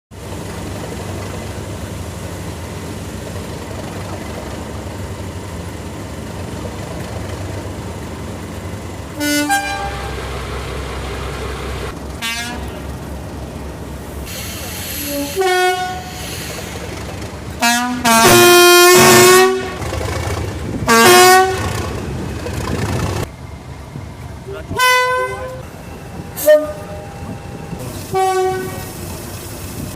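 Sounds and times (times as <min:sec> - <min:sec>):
diesel engine idling: 0:00.1 - 0:29.9
locomotive horn blasts: 0:09.2 - 0:10.5, 0:12.2 - 0:12.8, 0:14.9 - 0:16.2, 0:17.6 - 0:20.0, 0:20.9 - 0:21.8, 0:24.8 - 0:28.9.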